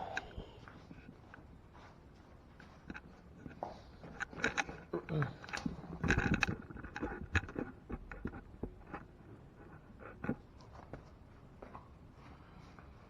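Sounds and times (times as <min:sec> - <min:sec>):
light clicks and knocks: 0:02.6 - 0:11.0.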